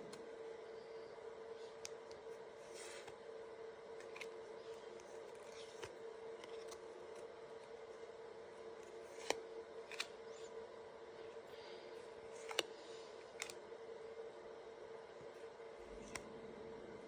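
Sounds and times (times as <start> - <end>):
steady hum: 0.0 - 17.0
cards rustling: 3.9 - 7.8, 8.6 - 10.6, 11.6 - 13.6, 15.8 - 16.3
cards snapping clicks: 9.1 - 10.2.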